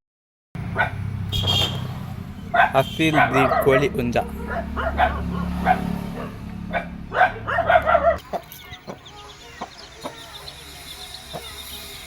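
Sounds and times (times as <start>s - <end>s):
chicks peeping: 7.7s - 12.0s.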